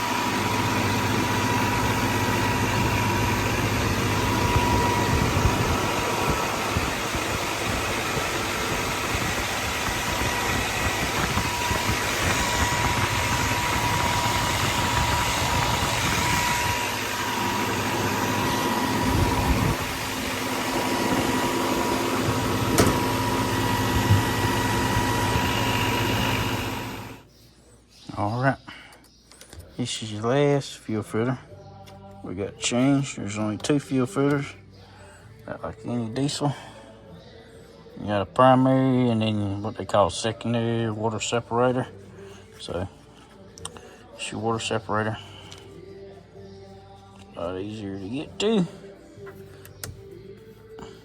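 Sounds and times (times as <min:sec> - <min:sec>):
diesel engine idling: 0:00.0 - 0:06.6.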